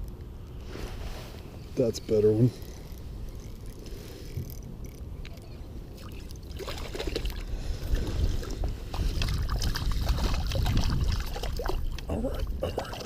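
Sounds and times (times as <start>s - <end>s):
wind rumble on microphone: 3.0s - 13.0s
fish splashing in water: 6.0s - 7.5s, 8.4s - 12.0s.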